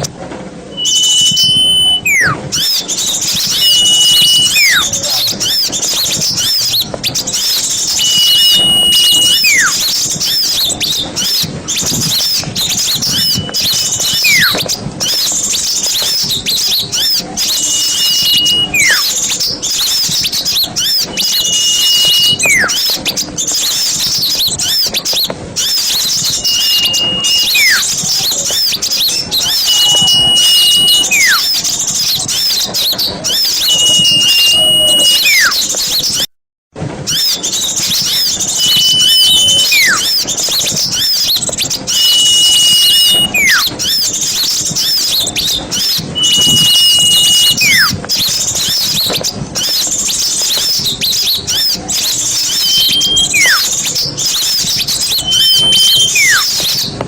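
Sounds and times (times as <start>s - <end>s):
note sliding downward: 0.7s - 2.4s, 17.6s - 19.0s
high whistle: 0.7s - 36.3s, 37.1s - 56.9s
small birds chattering: 0.7s - 36.3s, 37.1s - 57.0s.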